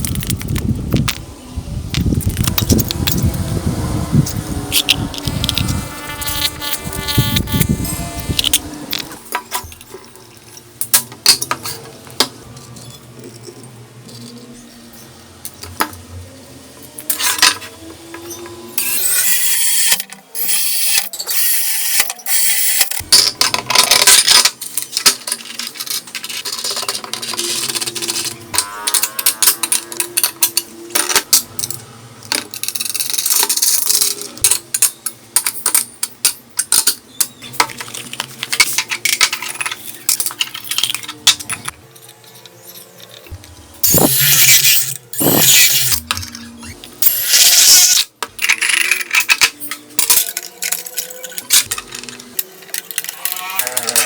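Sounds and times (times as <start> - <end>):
loud rushing noise: 1.7 - 9.0.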